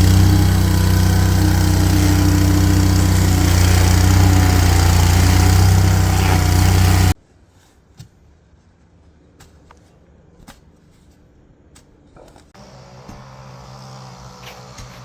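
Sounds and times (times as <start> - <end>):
landscaping equipment engine running: 0.0 - 7.2, 12.6 - 15.0.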